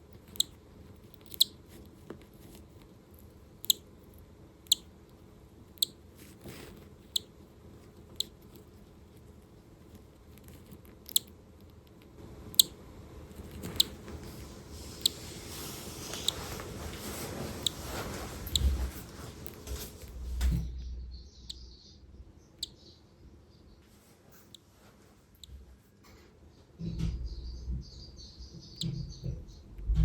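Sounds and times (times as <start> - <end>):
faint handling rustle: 0.8 - 3.3, 6.1 - 7.0, 13.4 - 20.5, 23.8 - 26.3
chick peeping: 18.4 - 18.8, 20.7 - 23.6, 26.8 - 30.0.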